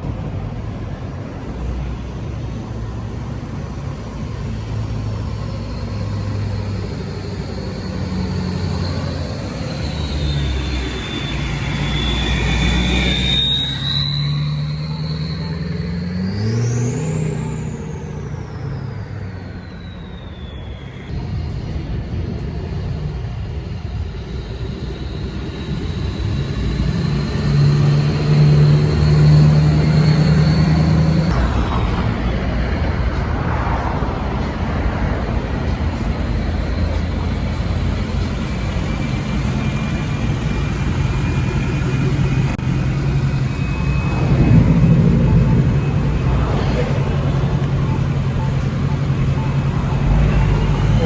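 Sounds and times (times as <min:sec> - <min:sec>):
diesel engine drone: 0:00.0 - 0:51.0
turbo whistle: 0:07.1 - 0:21.1, 0:38.9 - 0:51.0.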